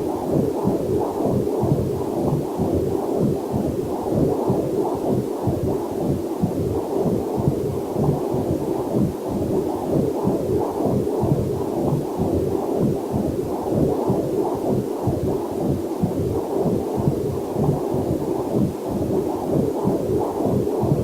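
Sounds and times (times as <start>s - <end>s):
doppler heartbeat whooshing: 0.0s - 21.0s.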